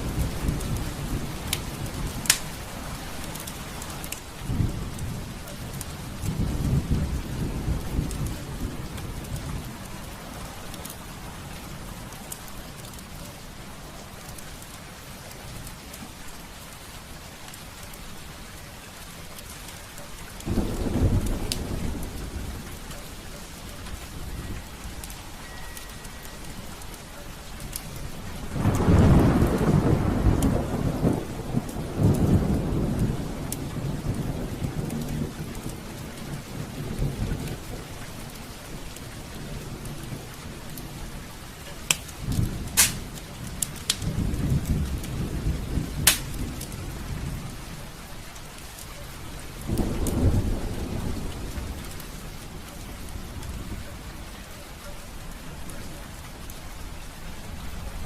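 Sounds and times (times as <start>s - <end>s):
fireplace fire crackling: 0.0s - 6.5s, 7.6s - 47.1s
thunder rumbling: 0.0s - 12.7s, 20.4s - 25.6s, 28.1s - 38.3s, 41.8s - 47.7s, 49.2s - 54.5s
heavy rain: 0.0s - 58.0s.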